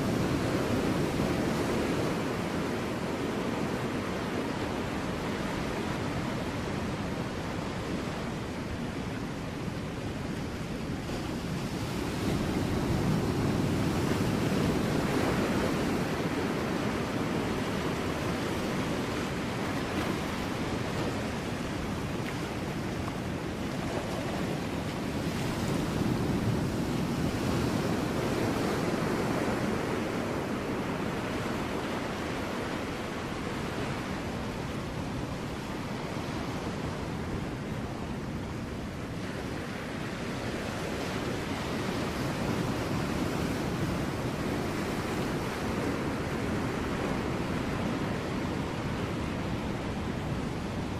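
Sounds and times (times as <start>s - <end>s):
ocean waves breaking on rocks: 0.0s - 50.9s.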